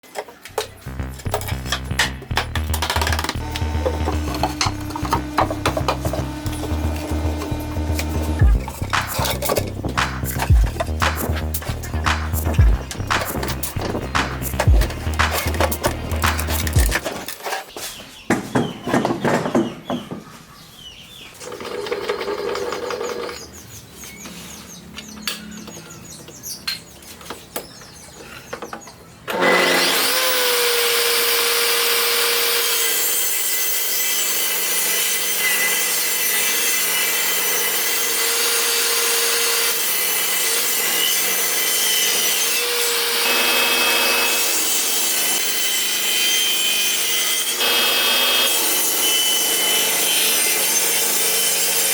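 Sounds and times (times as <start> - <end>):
woodworking noise: 0.1 - 20.1, 29.3 - 51.9
constant whine: 0.5 - 17.2
power tool cutting wood: 0.8 - 17.3, 29.3 - 51.9.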